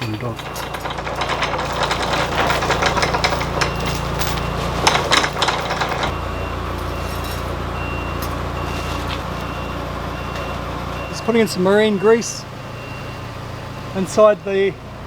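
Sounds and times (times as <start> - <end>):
metal clinks and rattles: 0.0 - 6.2, 6.9 - 7.6
heavy vehicle engine running: 0.0 - 15.0
reversing beeper: 6.1 - 14.8.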